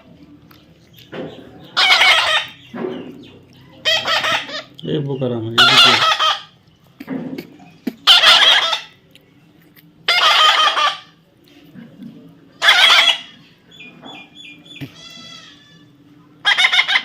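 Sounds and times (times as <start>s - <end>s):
parrot screeching: 1.8s - 2.6s, 3.8s - 4.7s, 5.6s - 6.6s, 8.1s - 8.9s, 10.1s - 11.1s, 12.6s - 13.4s, 14.9s - 17.0s.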